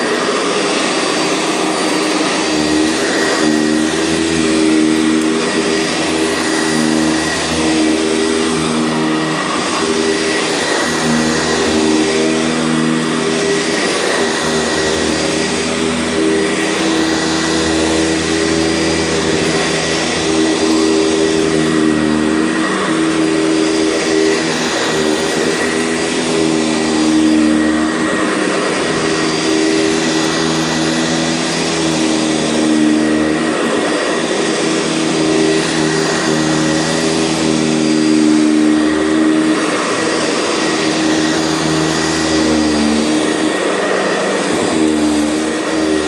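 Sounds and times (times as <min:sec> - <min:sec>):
vacuum cleaner running: 0:00.0 - 0:46.0.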